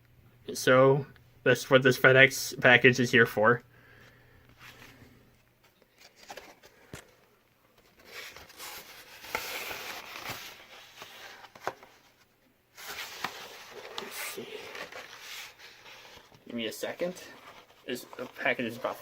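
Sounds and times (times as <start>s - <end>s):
package crinkling and rustling: 7.8s - 12.2s.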